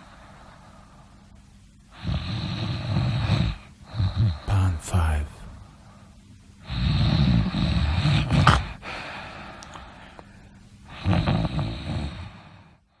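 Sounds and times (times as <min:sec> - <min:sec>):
quiet breathing: 0:00.0 - 0:13.0
person snoring: 0:01.9 - 0:05.6, 0:06.6 - 0:09.1, 0:10.9 - 0:12.8.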